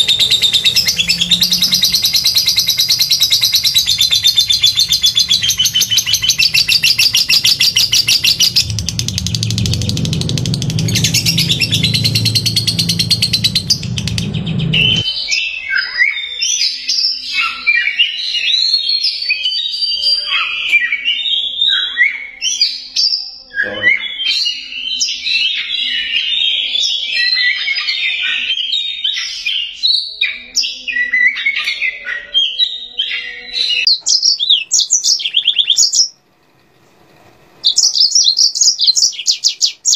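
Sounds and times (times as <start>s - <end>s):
bird whistles and chirps: 0.0s - 10.0s, 10.8s - 36.2s, 37.6s - 39.9s
songbird fast trill: 0.0s - 13.9s
low background rumble: 3.8s - 15.0s.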